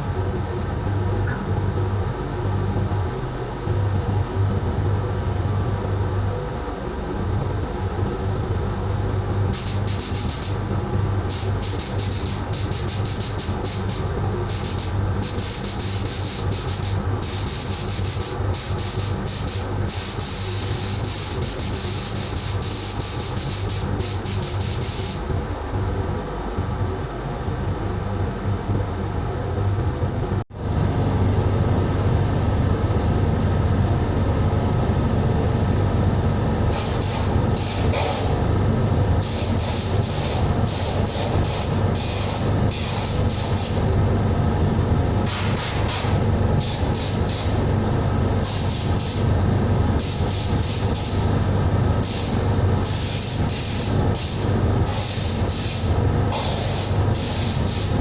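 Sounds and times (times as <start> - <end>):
air compressor humming: 0.0 - 58.0
compressed-air gun hissing: 9.5 - 10.6, 11.3 - 25.2, 36.7 - 38.4, 39.2 - 43.9, 45.2 - 47.6, 48.4 - 49.3, 50.0 - 51.3, 52.0 - 58.0.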